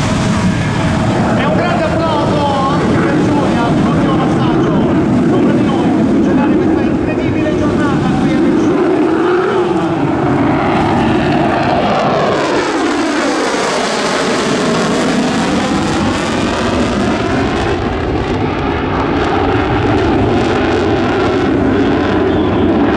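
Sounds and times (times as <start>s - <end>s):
jet fighter passing overhead: 0.0s - 22.9s.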